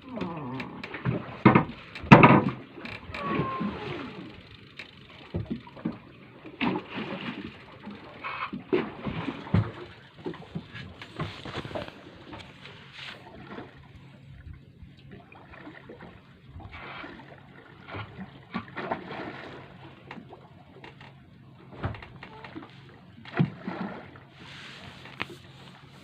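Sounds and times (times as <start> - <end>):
water lapping against boat hull: 0.0 - 26.0
knocks on boat: 1.4 - 3.5.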